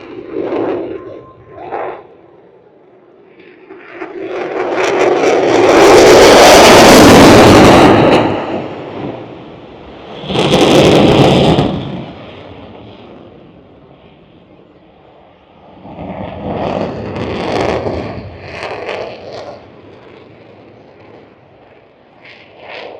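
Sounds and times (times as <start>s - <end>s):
aircraft passing overhead: 0.0s - 22.9s
loud burst of noise: 5.1s - 12.2s.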